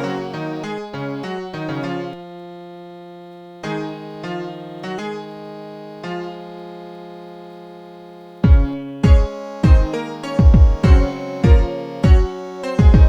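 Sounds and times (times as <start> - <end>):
keyboard playing slow chords: 0.0 - 13.0
deep kick drum: 8.4 - 13.0.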